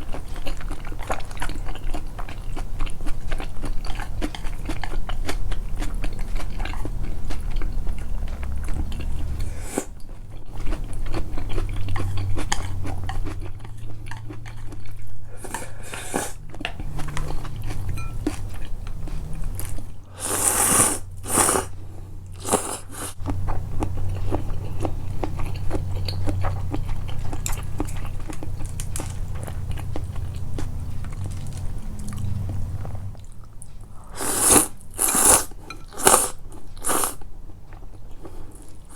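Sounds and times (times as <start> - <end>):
wet chewing of food: 0.0 - 38.9.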